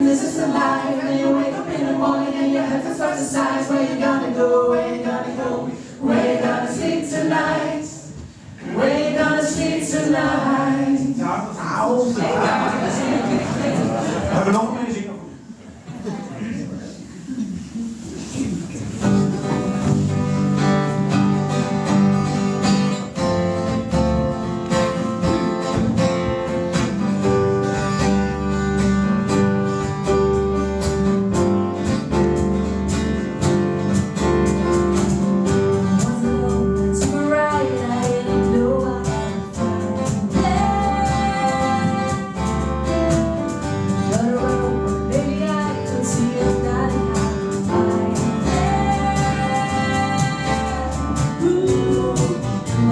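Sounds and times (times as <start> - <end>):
live band playing: 17.6 - 52.9
person singing: 35.9 - 43.0, 44.1 - 52.9.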